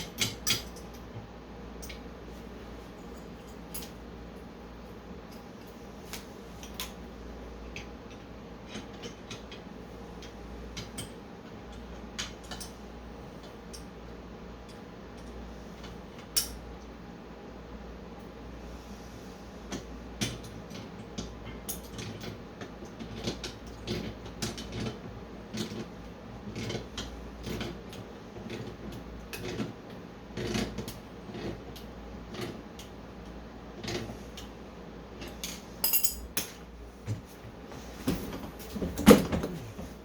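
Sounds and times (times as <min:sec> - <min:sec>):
metal clinks of bolts and tools: 0:35.8 - 0:36.6.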